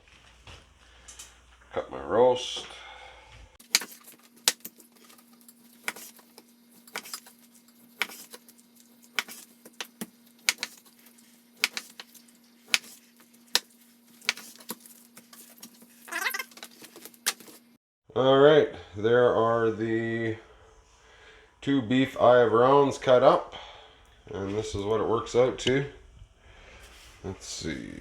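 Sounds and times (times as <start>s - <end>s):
faint steady hum: 18.2s - 28.0s.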